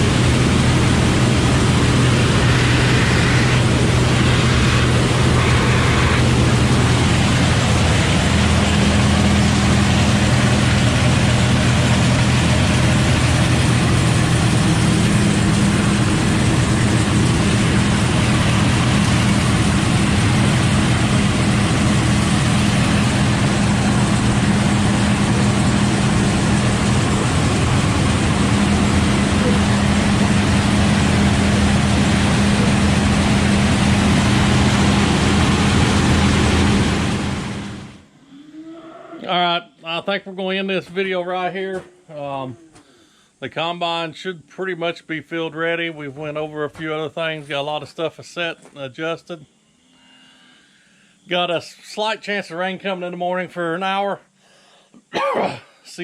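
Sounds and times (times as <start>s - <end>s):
combine harvester engine hum: 0.0s - 38.4s.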